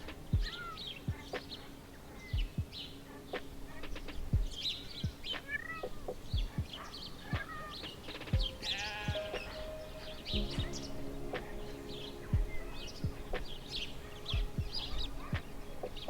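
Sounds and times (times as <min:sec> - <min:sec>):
background music with soft beat: 0:00.0 - 0:16.0
birds chirping: 0:00.0 - 0:16.0.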